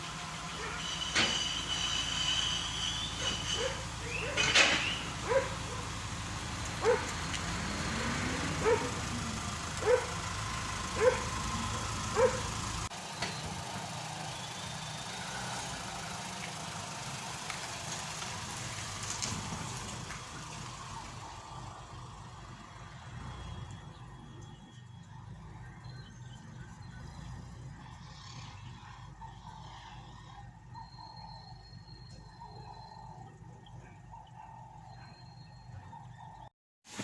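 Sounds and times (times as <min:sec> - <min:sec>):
dog barking: 0:00.6 - 0:00.9, 0:03.1 - 0:04.5, 0:05.2 - 0:06.0, 0:06.7 - 0:07.2, 0:08.0 - 0:10.3, 0:10.9 - 0:12.6, 0:33.8 - 0:35.3.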